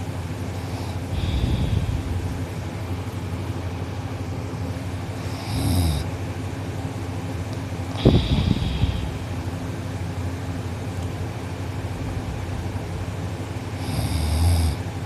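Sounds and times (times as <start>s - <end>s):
boy snoring: 0.6s - 2.1s, 5.3s - 6.1s, 8.0s - 9.2s, 13.8s - 14.8s.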